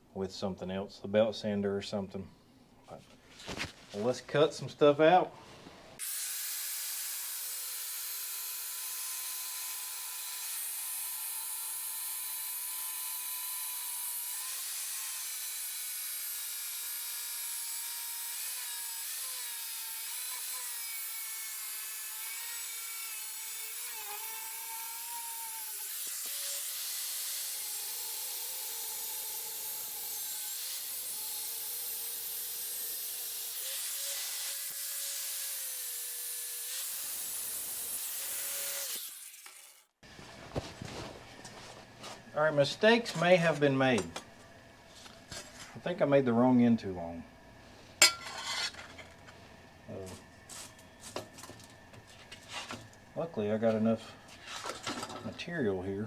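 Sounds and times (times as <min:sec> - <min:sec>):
cut-off wheel cutting sheet steel: 0:06.0 - 0:39.8.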